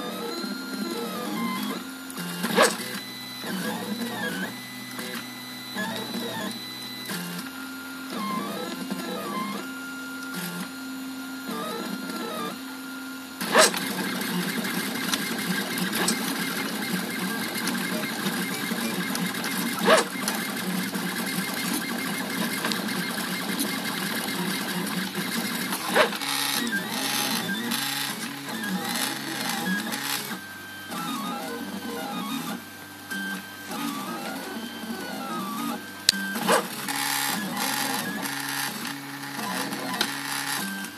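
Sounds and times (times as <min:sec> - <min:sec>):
stepper motors whining: 0:13.4 - 0:40.8.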